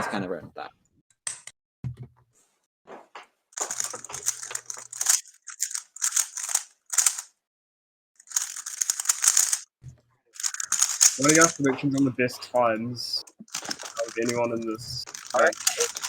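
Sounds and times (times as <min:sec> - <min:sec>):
rapid plastic cube clicking: 0:03.6 - 0:07.3, 0:08.2 - 0:09.7, 0:10.4 - 0:11.7, 0:13.3 - 0:16.0.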